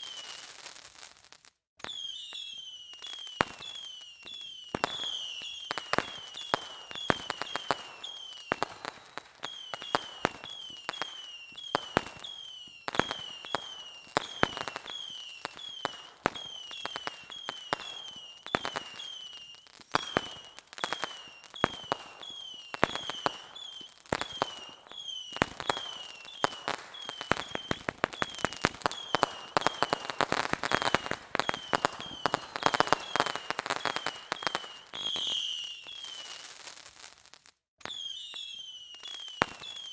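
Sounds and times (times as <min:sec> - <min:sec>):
firecrackers banging and crackling: 0:19.9 - 0:35.6.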